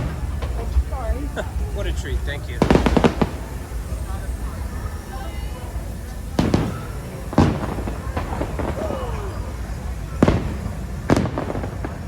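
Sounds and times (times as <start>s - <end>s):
fireworks bangs: 0.0s - 12.0s
small firework pops: 6.4s - 12.0s.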